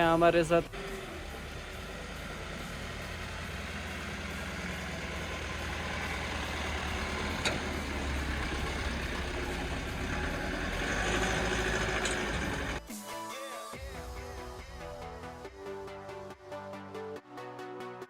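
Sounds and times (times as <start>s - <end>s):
diesel truck engine running: 0.0s - 12.8s.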